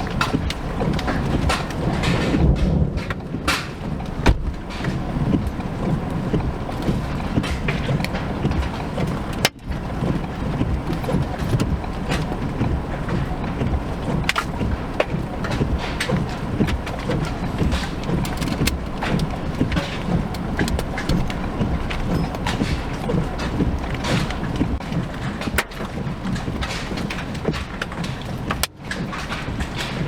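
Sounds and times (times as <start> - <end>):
sharp knocks: 0.0 - 9.8
vehicle driving with low rumble: 0.0 - 30.0
wind noise: 0.0 - 30.0.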